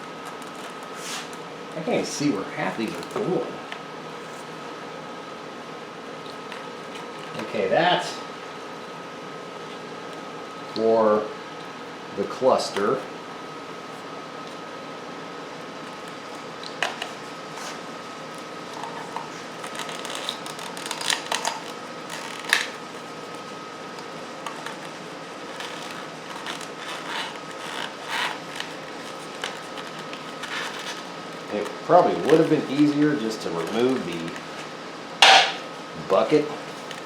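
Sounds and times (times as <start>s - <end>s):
wires and plastic connectors rustling: 0.0s - 1.4s, 15.8s - 34.8s
steady background hum: 0.0s - 37.0s.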